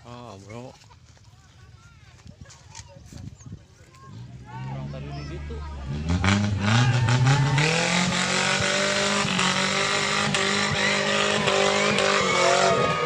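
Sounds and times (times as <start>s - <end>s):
engine revving hard: 4.7s - 13.0s
wheels spinning in mud: 6.7s - 13.0s.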